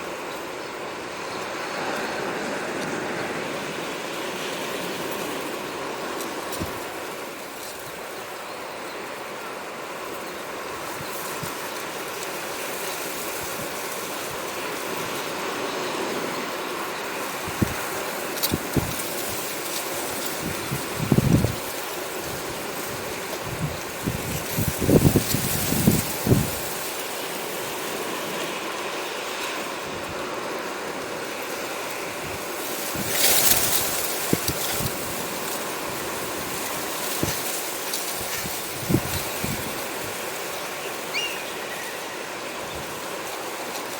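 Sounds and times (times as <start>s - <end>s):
sea waves washing in: 0.0s - 43.9s
wind thumps on microphone: 38.2s - 40.0s.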